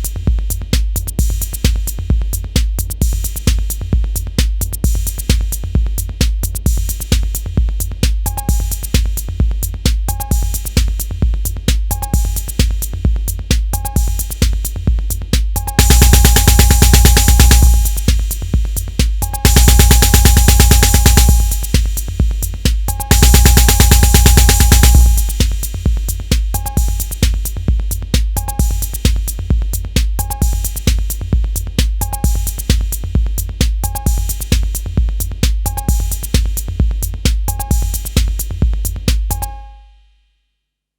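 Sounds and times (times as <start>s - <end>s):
deep bass drum: 7.6s - 39.4s
two-tone metallic hit: 15.8s - 18.1s, 19.5s - 21.7s, 23.1s - 25.4s.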